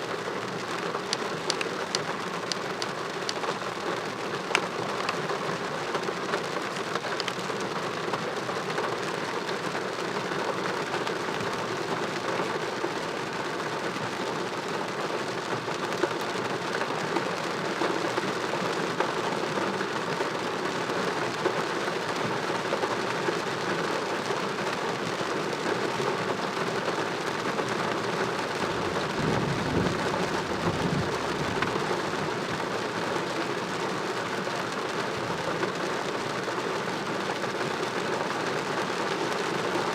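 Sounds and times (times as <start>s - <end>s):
heavy rain hissing: 24.1s - 39.9s.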